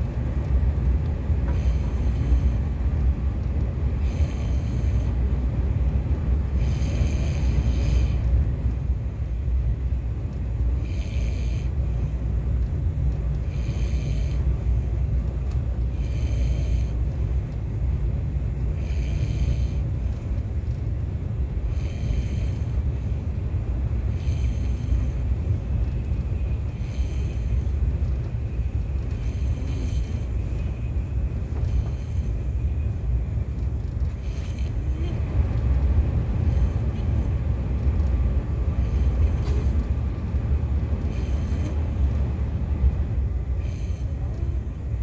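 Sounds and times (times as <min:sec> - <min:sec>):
high-speed train rumble: 0:00.0 - 0:45.0
man snoring: 0:04.0 - 0:05.2, 0:06.6 - 0:08.3, 0:18.8 - 0:20.1, 0:24.1 - 0:25.2, 0:29.2 - 0:30.4, 0:34.2 - 0:35.4, 0:36.4 - 0:37.8, 0:38.6 - 0:40.2, 0:40.9 - 0:42.9.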